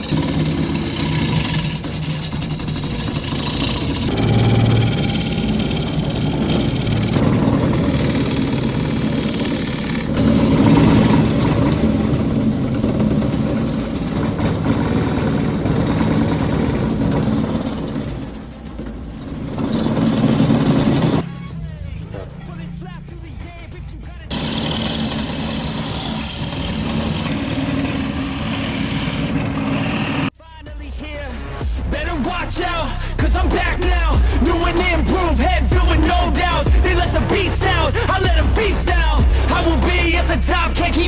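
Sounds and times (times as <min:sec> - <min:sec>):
wood lathe running: 0:00.0 - 0:21.2, 0:24.3 - 0:30.3.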